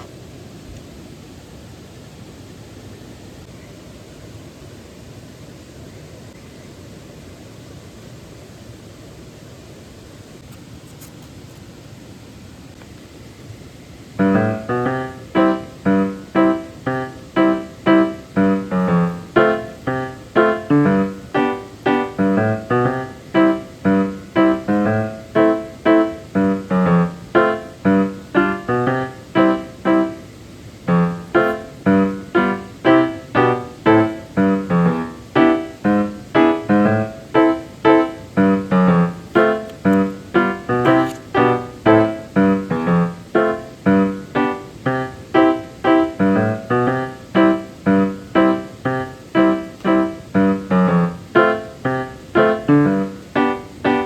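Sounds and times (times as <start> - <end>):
piano music: 14.2 - 54.0.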